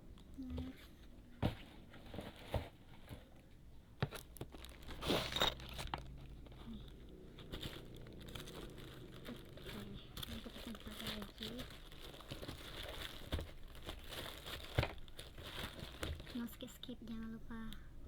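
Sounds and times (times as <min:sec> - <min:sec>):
packaging crinkling: 0:04.0 - 0:16.7
packaging tearing: 0:04.2 - 0:16.4.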